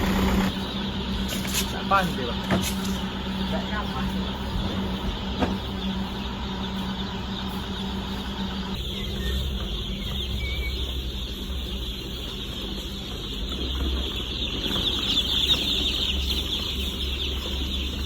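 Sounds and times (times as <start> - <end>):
deeper rumble: 0.0 - 18.0
mechanical running noise with hum: 0.0 - 18.0.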